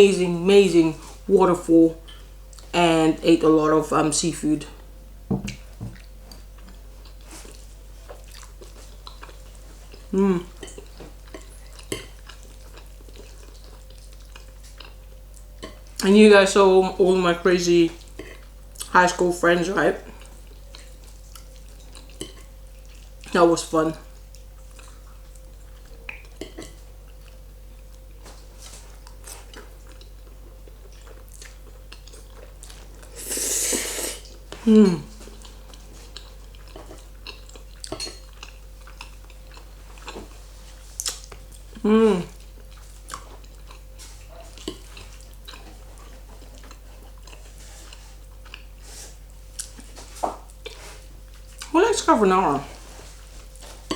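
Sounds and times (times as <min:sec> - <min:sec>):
low steady hum: 0:00.0 - 0:53.9
person chewing: 0:05.5 - 0:16.0, 0:20.1 - 0:23.3, 0:24.1 - 0:51.7.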